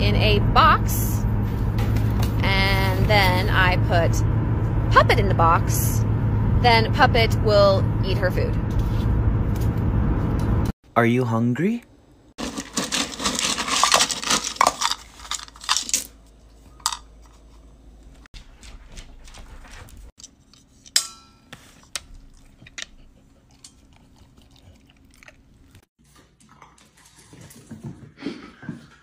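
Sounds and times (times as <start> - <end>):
cat crunching dry food: 12.4 - 16.1.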